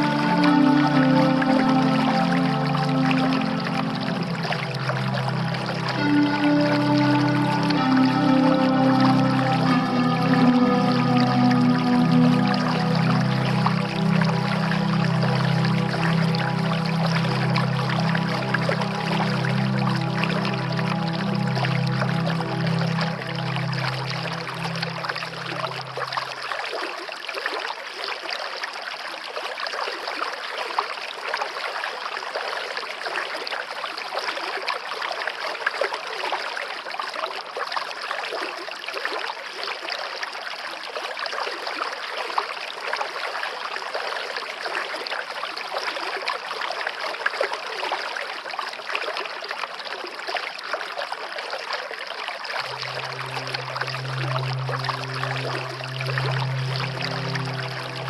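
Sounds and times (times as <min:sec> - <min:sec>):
background music low tone: 0:00.0 - 0:26.7, 0:52.6 - 0:58.0
stream water flowing: 0:00.0 - 0:58.0.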